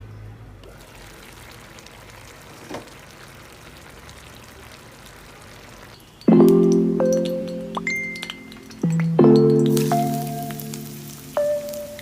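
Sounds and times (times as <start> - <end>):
running water: 0.7 - 12.0
music with chime-like tones: 6.3 - 12.0.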